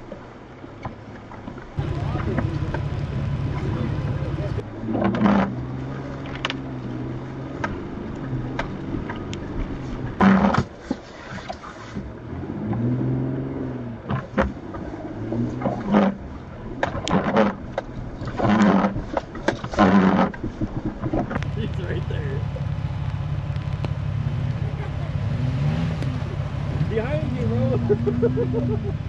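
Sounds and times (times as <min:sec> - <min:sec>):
truck knocking over bumps: 0:01.8 - 0:05.5
off-road truck engine revving: 0:01.8 - 0:10.6, 0:12.1 - 0:17.6, 0:21.3 - 0:29.0.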